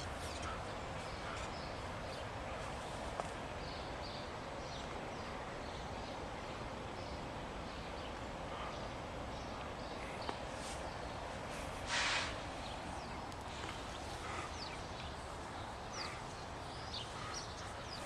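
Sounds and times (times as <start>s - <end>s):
steady background hiss: 0.0s - 18.0s.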